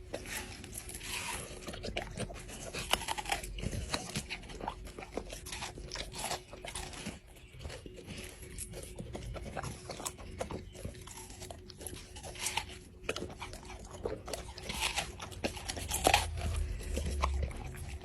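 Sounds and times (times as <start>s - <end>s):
dog chewing watermelon: 0.0s - 18.0s.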